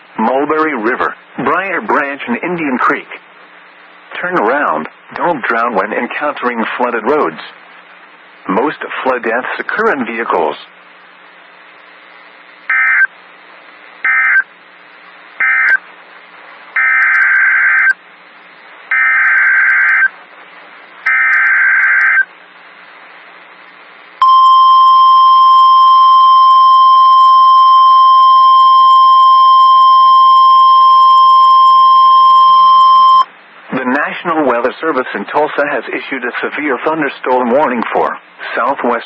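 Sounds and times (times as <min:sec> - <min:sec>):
steady warning alarm tone: 0:18.9 - 0:20.1, 0:21.1 - 0:22.3, 0:24.2 - 0:33.3.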